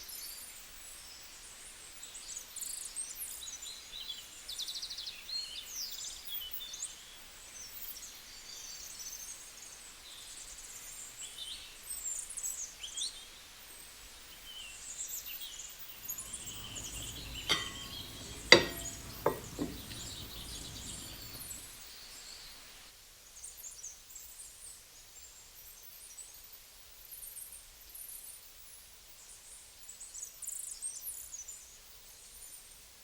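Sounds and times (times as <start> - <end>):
birds chirping: 16.0 - 21.7
sharp clicks or knocks: 16.1 - 21.6.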